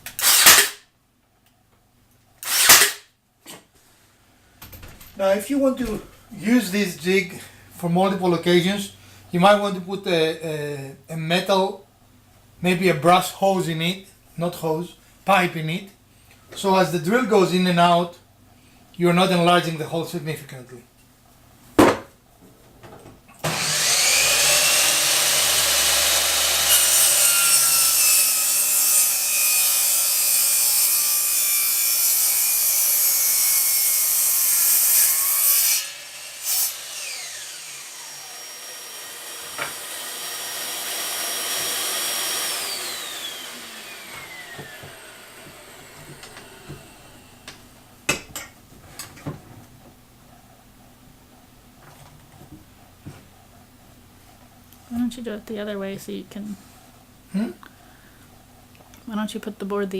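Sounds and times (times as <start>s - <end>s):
power saw cutting wood: 0.0s - 0.8s, 2.4s - 3.1s, 23.4s - 47.5s.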